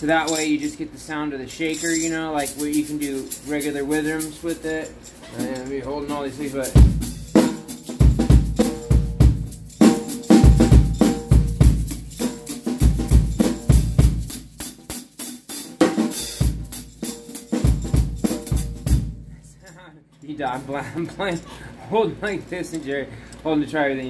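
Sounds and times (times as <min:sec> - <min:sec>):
kick drum thumps: 0:06.8 - 0:07.2, 0:08.0 - 0:09.6, 0:10.4 - 0:12.1, 0:12.8 - 0:14.3, 0:17.6 - 0:19.3.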